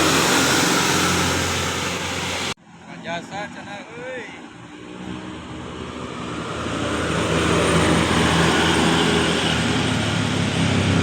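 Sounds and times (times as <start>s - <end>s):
bus engine passing: 0.0s - 3.7s, 4.4s - 11.0s.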